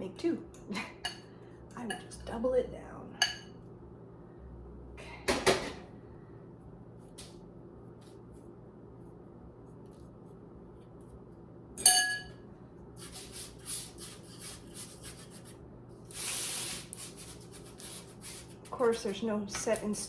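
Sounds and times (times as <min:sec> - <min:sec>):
utensil clinking against bowl: 0:11.8 - 0:12.4.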